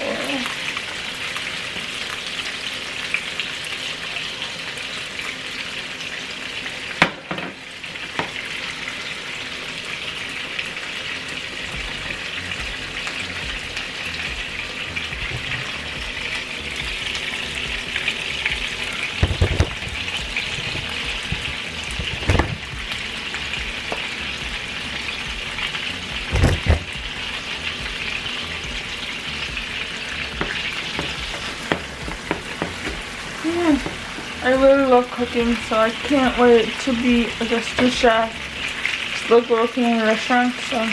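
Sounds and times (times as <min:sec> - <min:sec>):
meatballs sizzling in oil: 0:00.0 - 0:40.9
sharp knocks: 0:19.2 - 0:22.9, 0:26.2 - 0:27.1.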